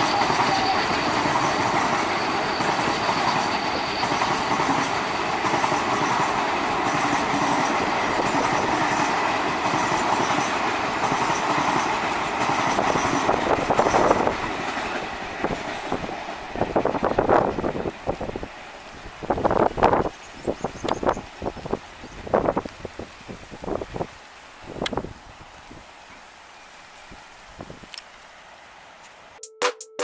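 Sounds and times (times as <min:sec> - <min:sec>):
faint high wheel squeal: 0:00.0 - 0:05.3
wheels clacking over rail joints: 0:00.0 - 0:20.0
train wheels rushing on rail: 0:00.0 - 0:26.2.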